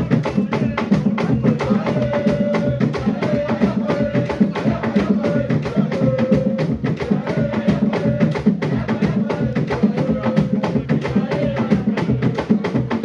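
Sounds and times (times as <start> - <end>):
drums played fast: 0.0 - 13.0
sharp clacking percussion: 0.0 - 13.0.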